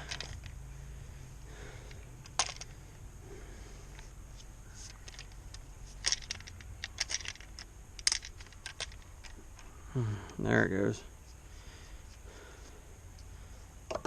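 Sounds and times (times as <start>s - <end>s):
clicks of hard parts handled: 1.9s - 2.7s.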